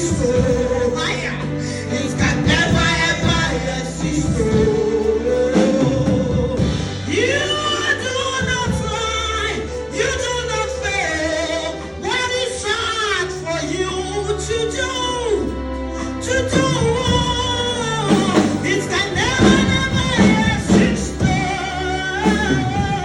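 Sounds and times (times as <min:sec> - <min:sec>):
band backing with bass: 0:00.0 - 0:23.0
person singing gospel runs: 0:16.2 - 0:23.0.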